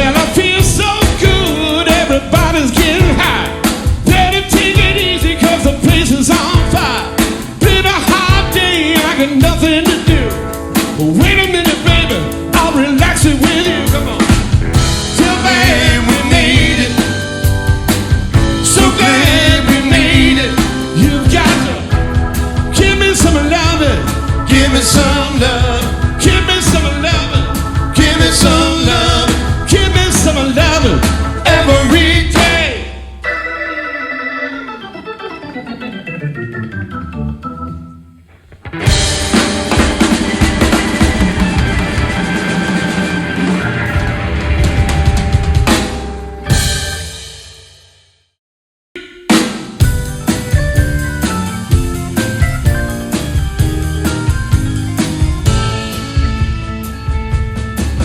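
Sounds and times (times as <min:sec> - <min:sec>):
organ: 0:00.0 - 0:47.5, 0:49.8 - 0:58.0
live rock band playing: 0:00.0 - 0:47.9, 0:49.0 - 0:58.0
wavering bending lead melody: 0:31.2 - 0:47.0.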